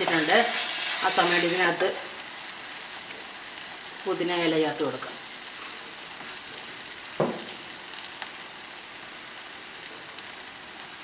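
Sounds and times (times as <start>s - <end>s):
food sizzling in a pan: 0.0s - 11.0s
dull knock: 7.2s - 7.5s.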